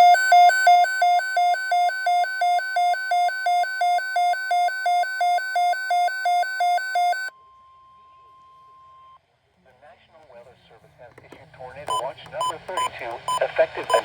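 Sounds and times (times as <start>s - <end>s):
alarm beeping rapidly: 0.0s - 7.3s
steady warning tone: 0.0s - 9.2s.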